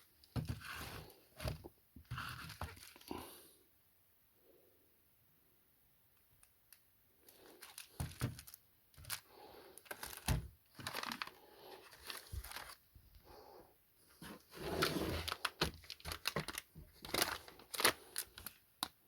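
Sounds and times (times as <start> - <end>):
packaging crinkling and tearing: 2.3 - 3.1, 7.3 - 12.8, 14.8 - 19.0.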